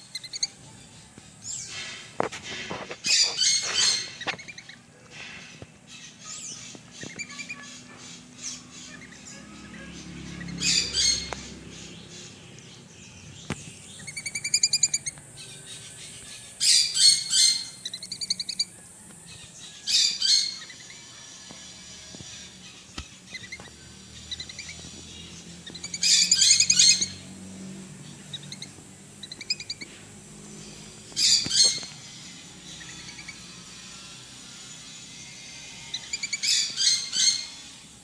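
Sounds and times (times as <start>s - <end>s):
parrot squawking: 3.0s - 4.8s, 5.9s - 11.7s, 14.0s - 18.8s, 25.6s - 27.2s, 30.7s - 33.6s, 35.7s - 37.7s.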